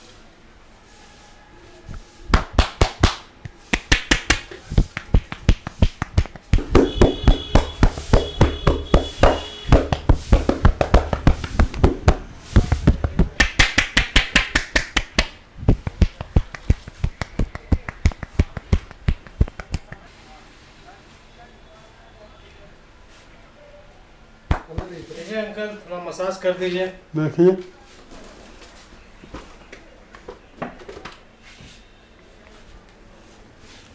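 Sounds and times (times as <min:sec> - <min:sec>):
hands tapping and slapping a head: 0:02.3 - 0:20.1, 0:24.5 - 0:25.2.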